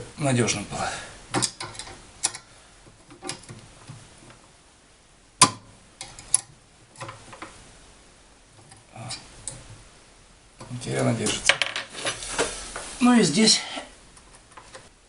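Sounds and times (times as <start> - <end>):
light metal clicks and taps: 1.3 - 2.5.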